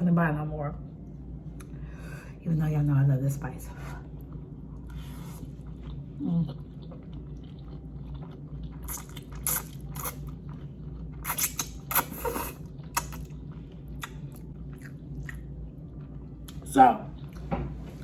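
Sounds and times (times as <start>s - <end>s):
wet chewing mouth sounds: 4.2s - 16.6s.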